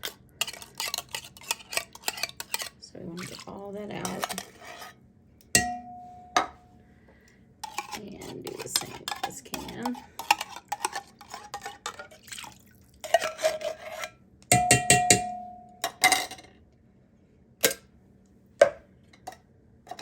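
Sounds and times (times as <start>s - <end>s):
metal spoon scraping tin can: 0.0s - 5.0s, 7.6s - 14.2s.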